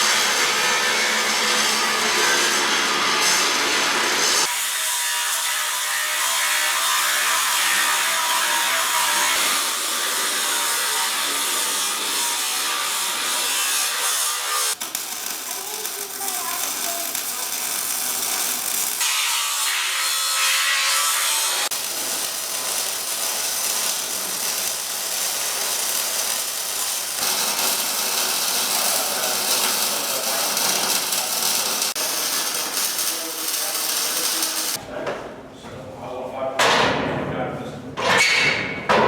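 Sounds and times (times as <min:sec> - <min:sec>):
welding arc crackling hiss: 0:06.4 - 0:34.8.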